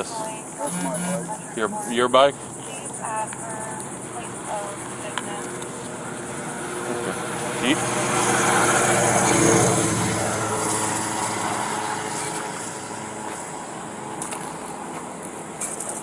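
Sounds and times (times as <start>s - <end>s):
vehicle passing by: 4.8s - 13.4s.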